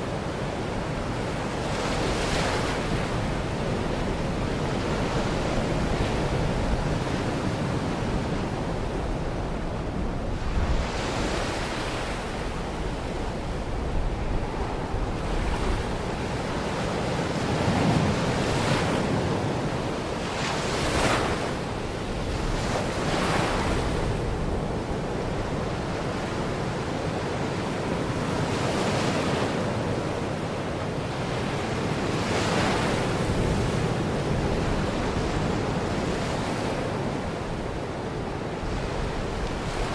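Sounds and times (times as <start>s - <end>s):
waves breaking on beach: 0.0s - 39.9s
wind buffeting microphone: 2.0s - 20.2s.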